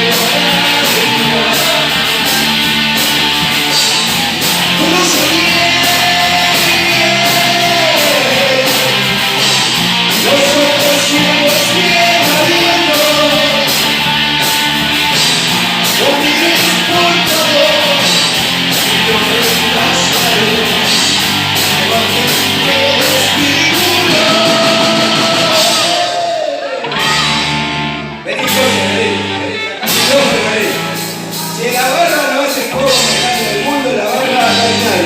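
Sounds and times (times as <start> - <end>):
drums with cymbals: 0.0 - 26.2, 29.8 - 35.0
bass guitar: 0.0 - 35.0
distorted electric guitar: 0.0 - 35.0
person singing: 0.0 - 35.0.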